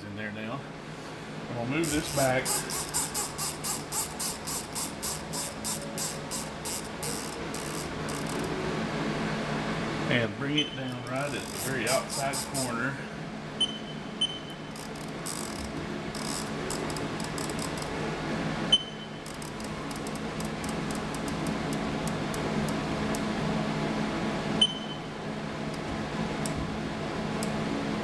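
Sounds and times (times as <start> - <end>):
machine humming: 0.7 - 28.0
control panel beeping: 13.6 - 14.7, 18.7 - 19.1, 24.6 - 25.0.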